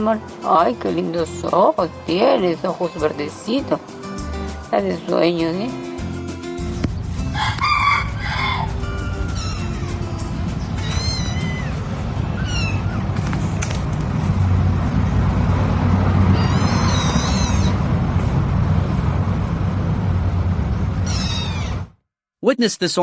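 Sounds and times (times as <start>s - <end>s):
low rumble: 6.6s - 21.9s
cat meowing: 9.2s - 9.9s, 10.7s - 13.0s, 16.3s - 17.8s, 21.0s - 21.9s.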